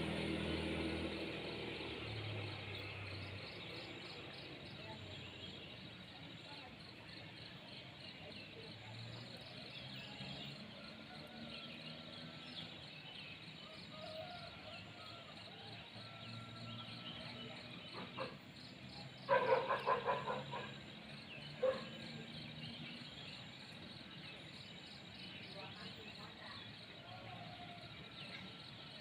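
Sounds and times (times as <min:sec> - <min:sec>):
insects chirping: 0:16.5 - 0:28.8.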